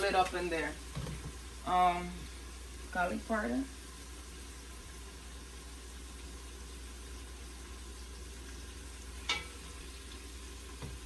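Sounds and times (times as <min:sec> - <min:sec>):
seasoning sizzling in oil: 0:00.0 - 0:11.0.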